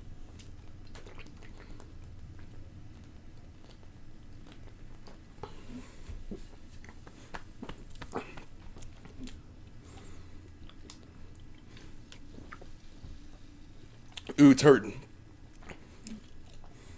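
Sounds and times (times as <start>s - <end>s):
person gulping and swallowing: 0.2s - 9.8s.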